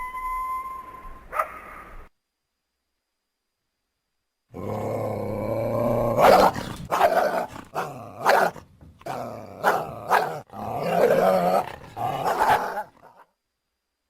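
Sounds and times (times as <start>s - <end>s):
coyote growling: 4.6s - 13.2s
coyote barking: 5.6s - 13.2s.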